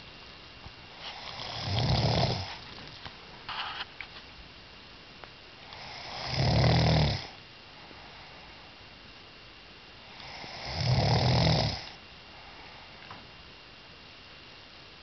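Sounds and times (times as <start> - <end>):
long low snores: 1.0 - 2.6, 5.6 - 7.4, 10.0 - 12.0.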